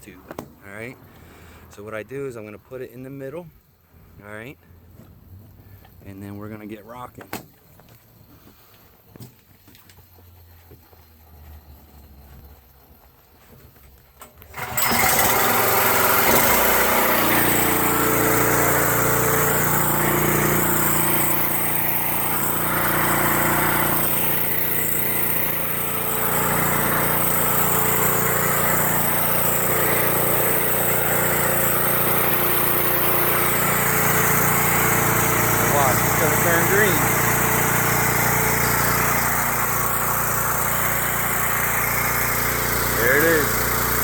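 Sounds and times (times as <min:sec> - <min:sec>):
pressure washer engine running: 0:14.5 - 0:44.0.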